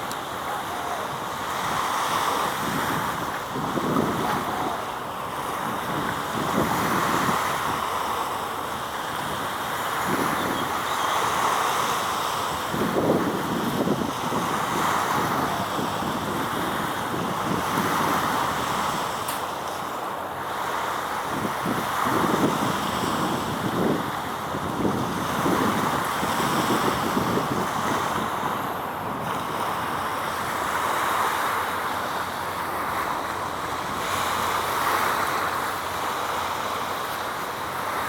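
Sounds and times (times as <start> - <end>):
wind gusting on microphone: 0.0 - 8.0, 8.8 - 11.6, 12.4 - 19.6, 21.1 - 35.4.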